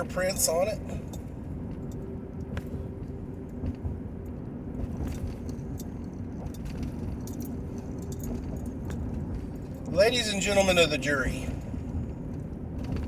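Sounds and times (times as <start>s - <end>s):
car cabin rumble: 0.0s - 13.0s
faint clicks and rattles: 1.1s - 10.0s, 11.7s - 13.0s.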